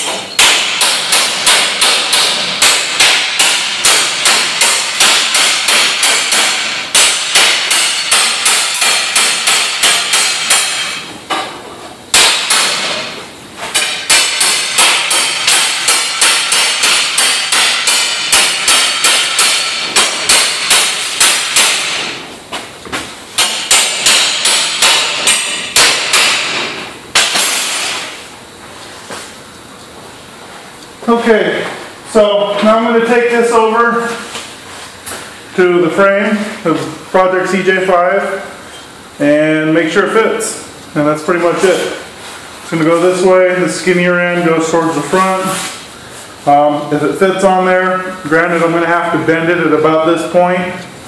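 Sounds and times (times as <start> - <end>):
hammer striking steel plate: 0.0 - 22.2, 23.4 - 28.2.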